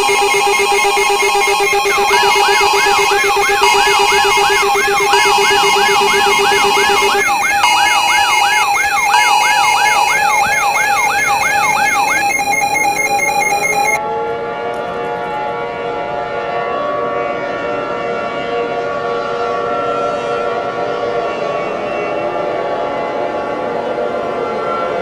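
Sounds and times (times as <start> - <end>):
alarm tones: 0.0 - 14.0
civil defense siren winding up: 0.0 - 14.0
electronic siren yelp: 0.0 - 14.0.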